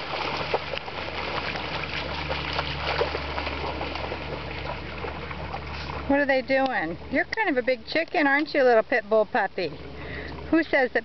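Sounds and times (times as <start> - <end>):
small irregular splashes: 0.0 - 8.3
shallow river water running: 0.0 - 11.0.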